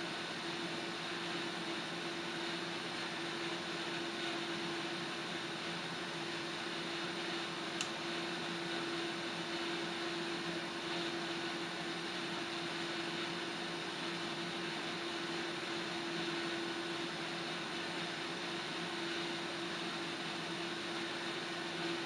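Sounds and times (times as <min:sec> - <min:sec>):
faint click: 0:07.8 - 0:08.0.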